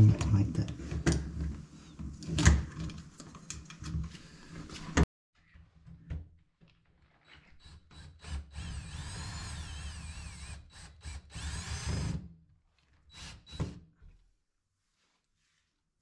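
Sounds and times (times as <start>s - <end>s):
power drill whining: 7.6s - 12.2s, 13.1s - 13.8s.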